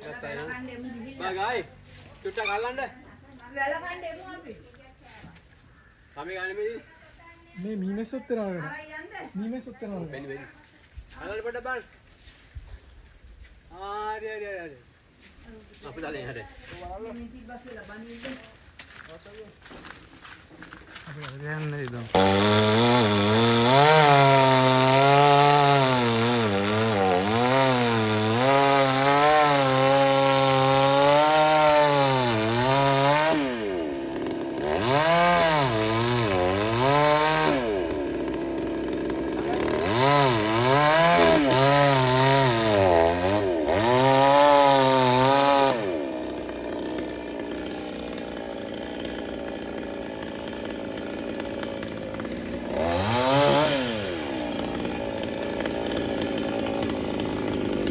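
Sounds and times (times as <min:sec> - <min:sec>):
chainsaw cutting wood: 0:18.0 - 0:57.9.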